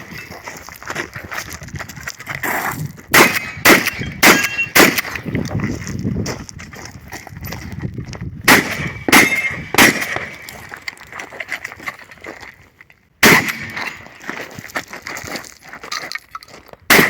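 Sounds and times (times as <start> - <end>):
shotgun shots with ringing: 3.1 - 5.2, 8.5 - 10.6, 13.2 - 14.1.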